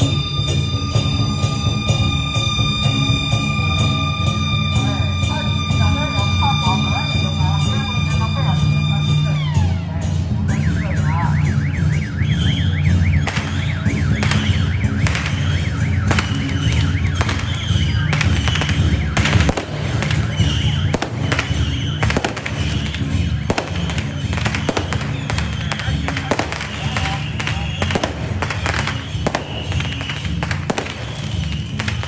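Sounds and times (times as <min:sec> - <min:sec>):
warbling electronic siren tone: 0:10.5 - 0:25.1
firecrackers popping: 0:10.5 - 0:32.0.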